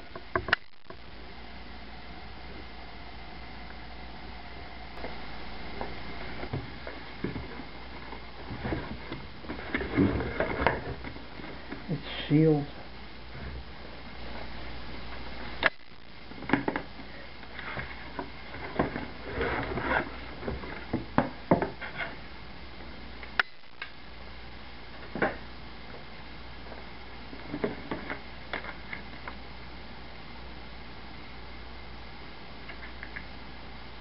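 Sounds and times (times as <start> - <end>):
rustling: 5.0 - 11.9, 16.4 - 22.3.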